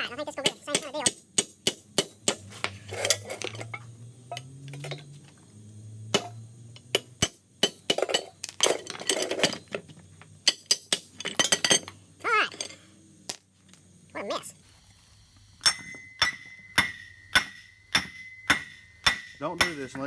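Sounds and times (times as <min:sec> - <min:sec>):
hammer striking steel: 0:00.4 - 0:04.5, 0:06.1 - 0:08.4, 0:15.6 - 0:20.0.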